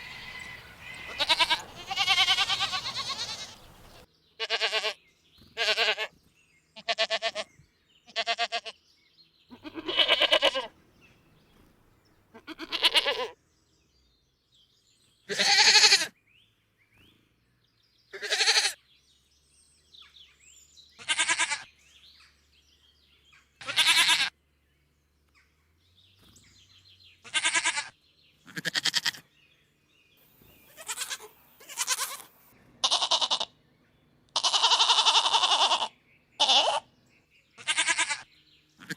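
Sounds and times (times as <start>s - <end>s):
goats bleating: 0.0s - 5.0s, 5.6s - 6.1s, 8.1s - 8.7s, 9.5s - 10.7s, 12.4s - 13.4s, 15.3s - 16.1s, 18.1s - 18.8s, 21.0s - 21.7s, 23.6s - 24.3s, 27.2s - 29.2s, 30.6s - 33.5s, 34.3s - 36.9s, 37.6s - 38.9s.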